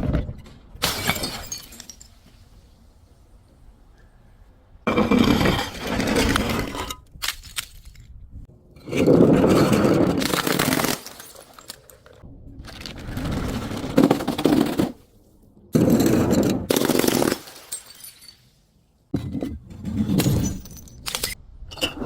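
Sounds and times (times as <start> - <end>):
objects crunching and cracking: 9.0 - 15.0.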